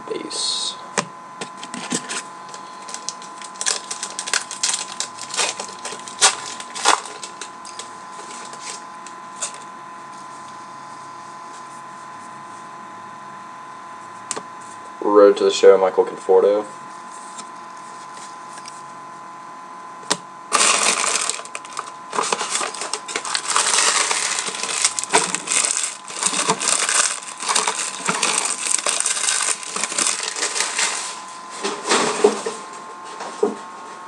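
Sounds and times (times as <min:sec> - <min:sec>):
dense crackle: 0:02.8 - 0:07.9, 0:20.5 - 0:31.2
wrapper crinkling and tearing: 0:02.8 - 0:08.8, 0:20.5 - 0:31.2.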